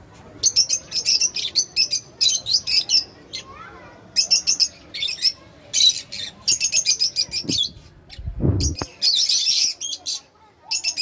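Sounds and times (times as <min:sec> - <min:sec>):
lovebirds chirping: 0:04.2 - 0:11.0
short low rumble: 0:07.4 - 0:08.9.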